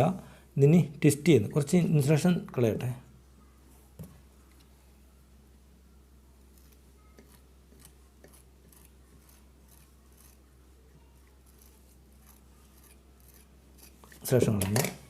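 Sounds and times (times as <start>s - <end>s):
blade scraping wire: 6.5s - 15.0s.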